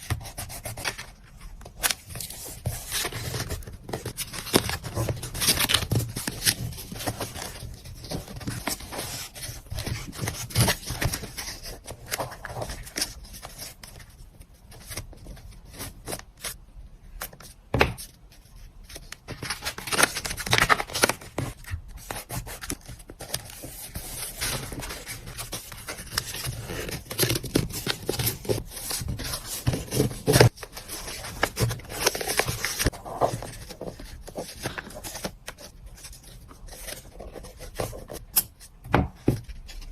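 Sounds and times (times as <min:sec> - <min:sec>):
packaging rustling and scraping: 0:18.0 - 0:38.6.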